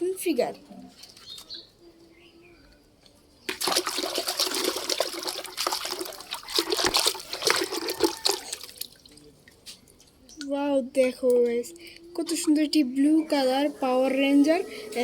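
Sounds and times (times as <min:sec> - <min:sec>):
water splashing and trickling: 0:03.5 - 0:10.6.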